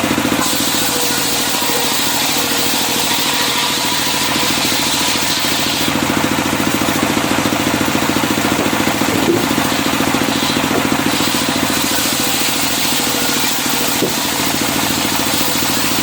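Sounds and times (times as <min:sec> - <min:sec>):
sawmill engine pulsing: 0:00.0 - 0:16.0.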